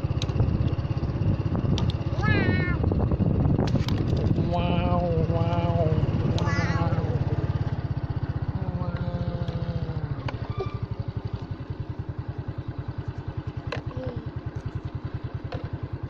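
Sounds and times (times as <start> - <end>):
motorcycle engine running: 0.0 - 16.0
sharp clicks: 1.7 - 2.0.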